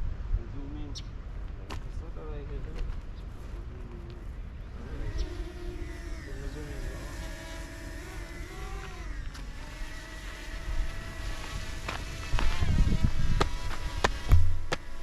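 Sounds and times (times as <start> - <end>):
motor humming: 3.4 - 15.0.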